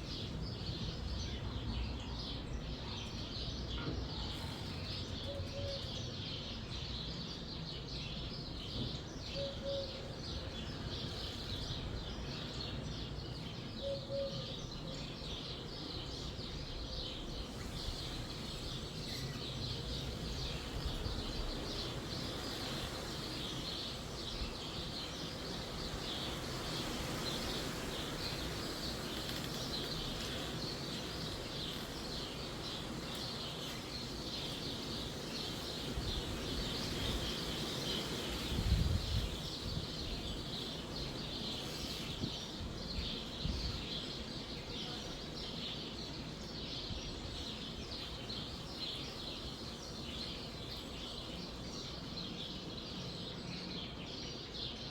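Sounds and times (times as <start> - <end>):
songbirds chirping: 0.0 - 54.9
wind rumbling: 35.0 - 40.5.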